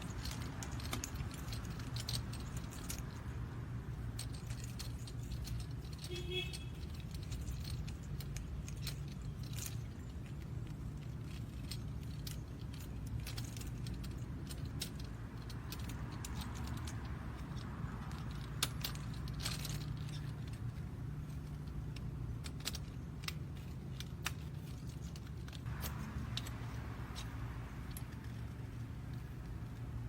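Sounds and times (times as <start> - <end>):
keys and metal parts clinking: 0.0 - 30.0
low hum: 18.0 - 30.0.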